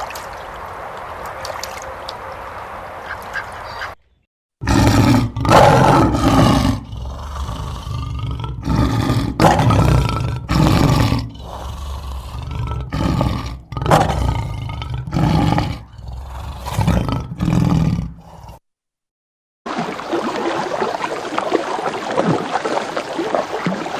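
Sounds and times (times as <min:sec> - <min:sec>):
large animal roaring: 0:04.6 - 0:18.6.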